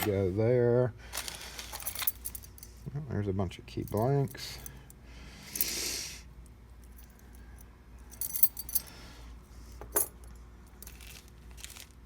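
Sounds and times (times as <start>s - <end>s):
metal keys clinking: 1.2s - 2.8s, 6.8s - 9.0s.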